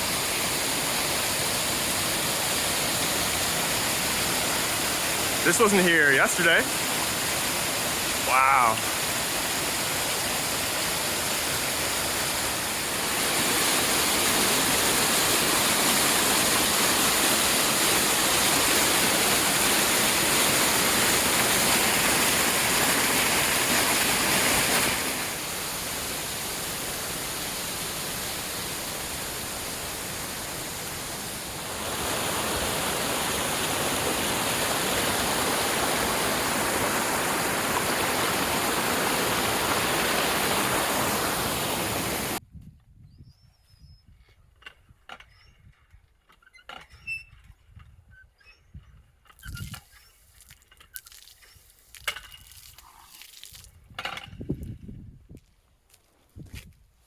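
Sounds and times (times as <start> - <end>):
floodwater rushing: 0.0 - 42.4.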